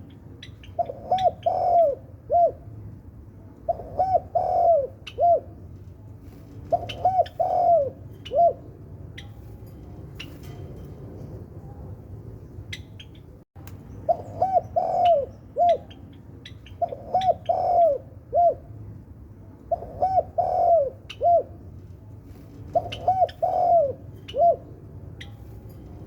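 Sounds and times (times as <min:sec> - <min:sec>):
dove cooing: 0:00.0 - 0:02.8, 0:03.6 - 0:05.6, 0:06.6 - 0:08.8, 0:14.1 - 0:18.7, 0:19.7 - 0:21.7, 0:22.6 - 0:25.3
small birds chirping: 0:12.4 - 0:18.0.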